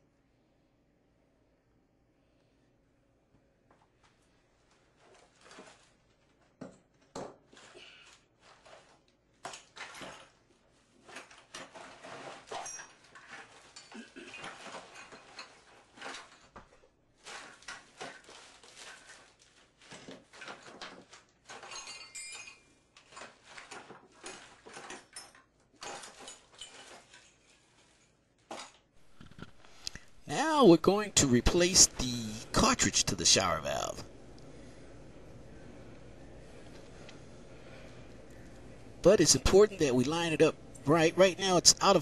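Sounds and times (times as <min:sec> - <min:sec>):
metal parts and tools clinking: 0:11.2 - 0:16.5, 0:20.4 - 0:29.5.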